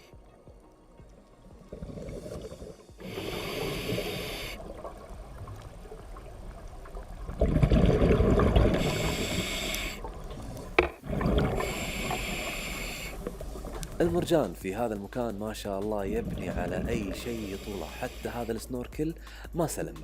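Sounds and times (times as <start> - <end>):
exhaled bubbles rumbling: 1.4 - 14.9, 16.0 - 17.5
regulator hissing inhalations: 2.1 - 4.7, 8.7 - 10.8, 11.4 - 14.0, 17.3 - 19.6.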